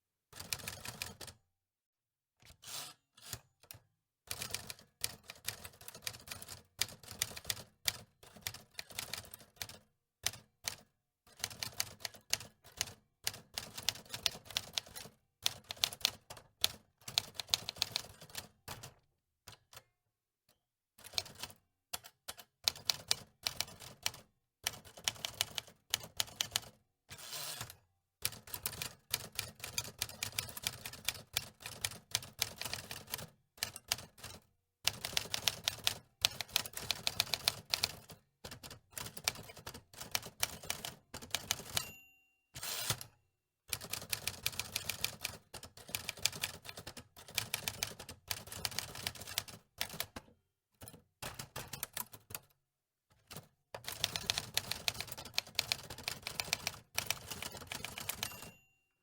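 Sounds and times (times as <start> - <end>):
typewriter keys clacking: 43.8 - 50.2, 53.3 - 58.6.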